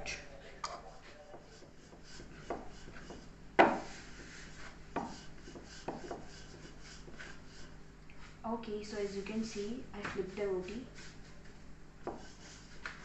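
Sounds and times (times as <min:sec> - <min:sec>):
utensil knocking on a griddle: 0:01.4 - 0:04.0, 0:04.9 - 0:06.3.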